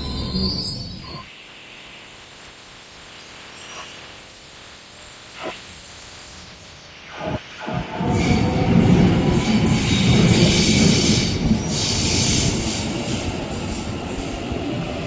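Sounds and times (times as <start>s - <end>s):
high wheel squeal: 0.0s - 1.3s
train wheels rumbling: 7.2s - 15.0s.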